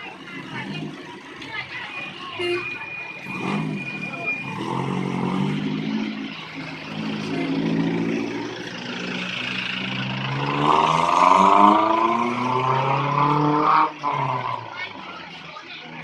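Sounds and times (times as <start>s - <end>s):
vehicle engine revving: 3.2s - 15.3s.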